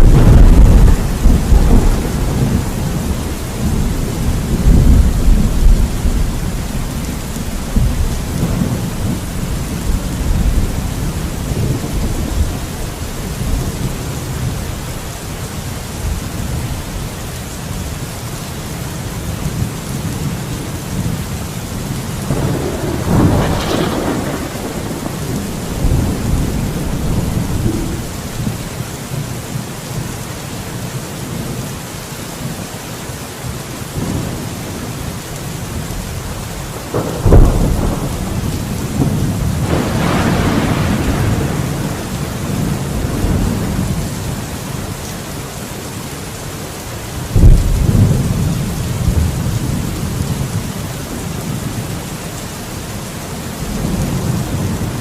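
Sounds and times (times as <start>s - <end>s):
sharp thunderclaps: 0.0s - 12.6s, 22.2s - 28.8s, 36.8s - 44.2s, 47.3s - 50.3s
rolling thunder: 0.0s - 14.8s, 19.6s - 28.9s, 35.7s - 44.7s, 47.2s - 52.0s
heavy rain: 0.0s - 55.0s.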